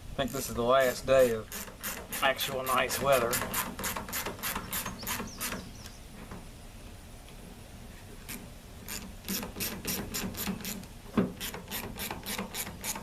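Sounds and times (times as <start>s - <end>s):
hand ratchet clicking: 0.3s - 5.7s, 8.3s - 13.0s.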